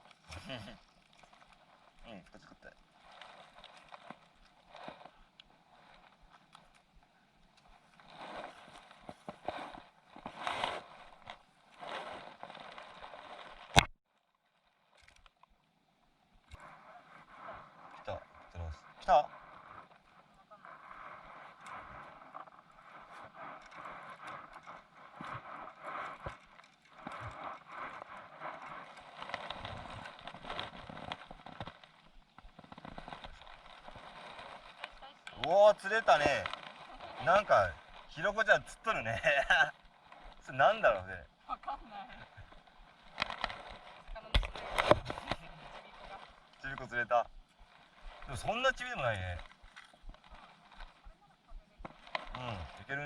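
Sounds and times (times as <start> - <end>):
seawater washing against breakwater: 16.5 - 53.0.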